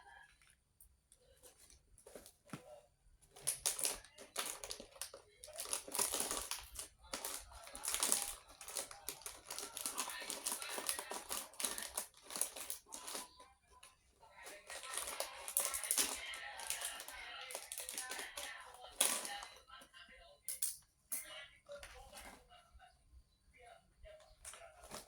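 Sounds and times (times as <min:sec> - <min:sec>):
plastic snack packets crinkling: 0:01.2 - 0:20.0, 0:24.2 - 0:25.0.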